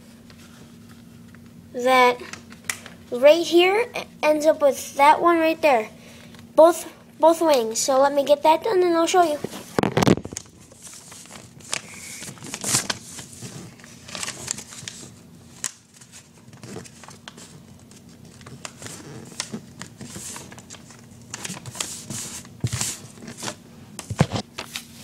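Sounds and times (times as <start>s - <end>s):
paper folding and crinkling: 9.4s - 25.0s.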